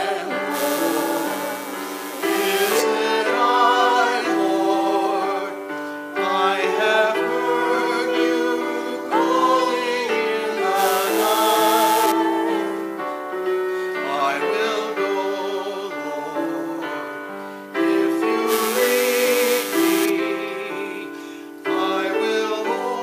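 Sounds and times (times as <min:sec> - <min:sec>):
choir singing a hymn: 0:00.0 - 0:13.1, 0:14.0 - 0:16.9, 0:17.8 - 0:23.0
hiss: 0:00.4 - 0:03.3, 0:10.7 - 0:12.2, 0:18.5 - 0:20.1
instrumental accompaniment: 0:00.4 - 0:03.6.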